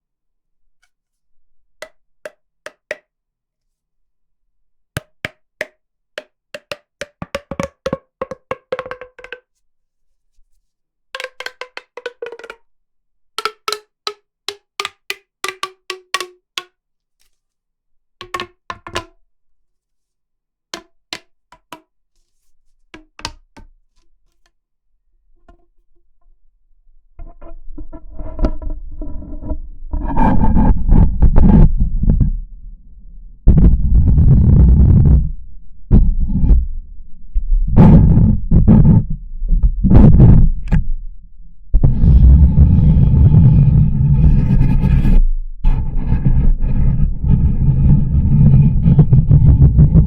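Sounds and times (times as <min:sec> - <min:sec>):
hollow knocking clicks: 0:05.0 - 0:09.4, 0:11.2 - 0:12.6, 0:13.4 - 0:16.7, 0:18.2 - 0:19.1.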